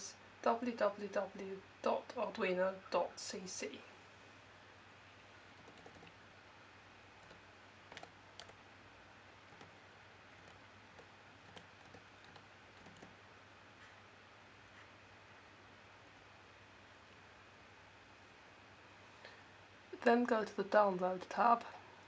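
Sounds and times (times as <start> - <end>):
low steady hum: 0.0 - 22.0
keyboard and mouse clicks: 5.6 - 6.2, 7.2 - 8.6, 9.5 - 9.8, 10.4 - 13.2.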